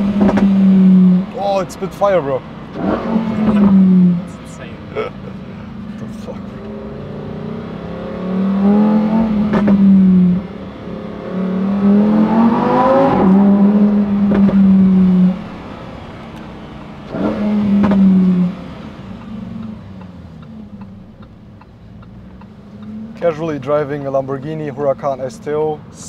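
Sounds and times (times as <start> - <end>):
exhaust cracks: 0.0 - 6.9, 7.6 - 25.7
car engine revving: 0.0 - 26.0.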